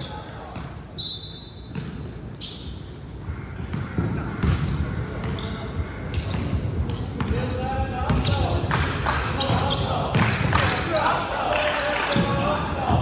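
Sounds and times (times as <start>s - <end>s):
sneaker squeaks: 0.0s - 13.0s
basketball bouncing on floor: 6.2s - 7.4s.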